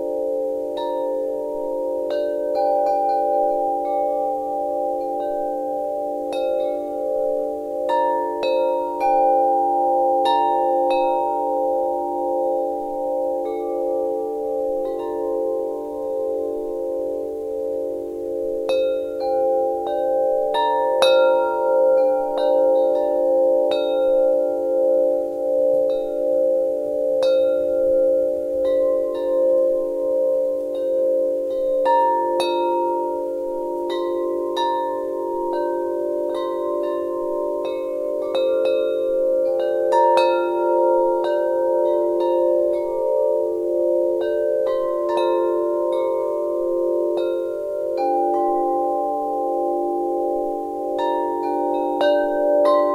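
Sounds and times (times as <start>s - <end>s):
wind chimes ringing: 0.0s - 52.9s.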